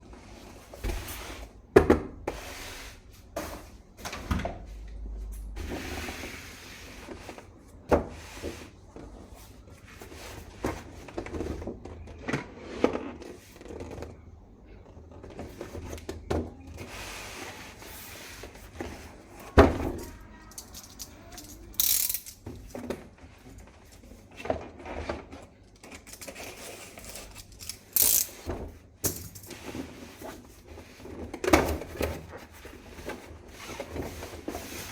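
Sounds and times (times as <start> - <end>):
plastic parts clicking and ratcheting: 20.0 - 22.7, 25.8 - 28.4.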